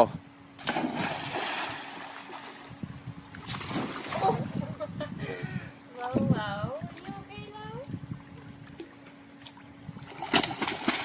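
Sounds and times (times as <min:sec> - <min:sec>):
water splashing and sloshing: 0:00.6 - 0:04.8, 0:06.7 - 0:11.0.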